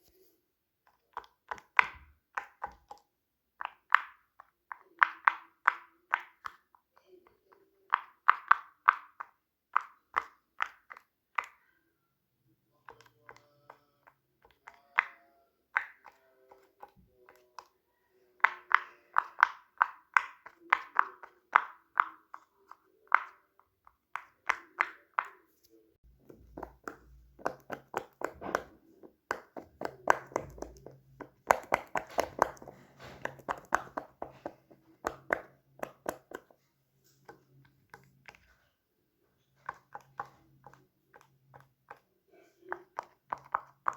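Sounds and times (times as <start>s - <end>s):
plastic fidget toys clicking: 18.4s - 25.3s.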